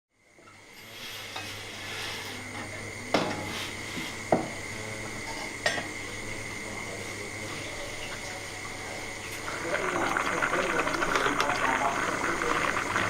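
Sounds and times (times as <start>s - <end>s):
steady hum with high whine: 0.2s - 13.0s
dishes clanking: 5.2s - 6.0s.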